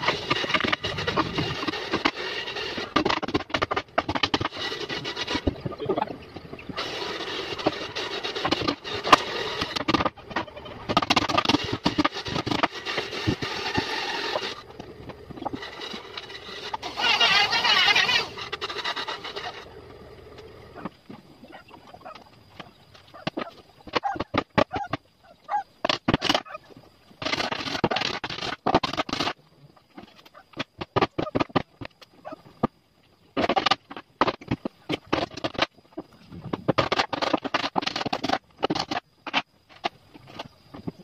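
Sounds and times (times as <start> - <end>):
tool scraping wood: 0.0 - 5.8, 6.6 - 19.8.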